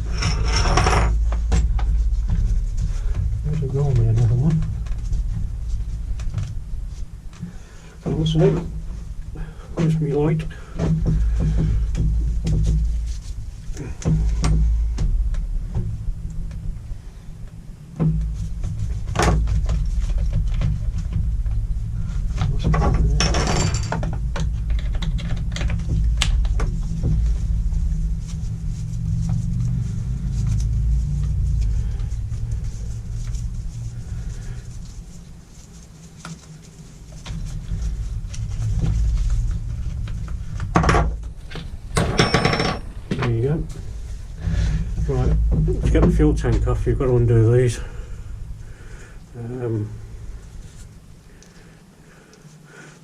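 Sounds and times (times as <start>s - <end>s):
hand tools and parts clattering: 0.0s - 5.4s, 18.0s - 27.2s, 39.9s - 43.8s
steady low hum: 0.0s - 53.0s.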